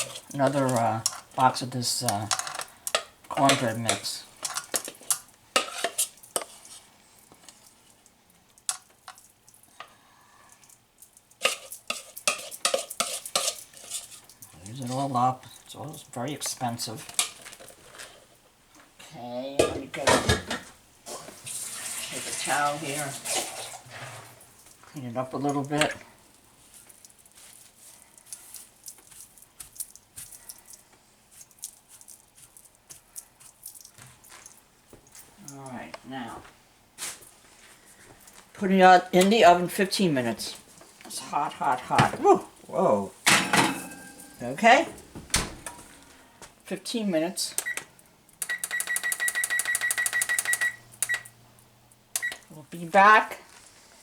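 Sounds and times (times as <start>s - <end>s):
utensil scraping a bowl: 0.0s - 1.3s, 3.5s - 6.9s, 11.4s - 15.1s, 21.1s - 24.4s.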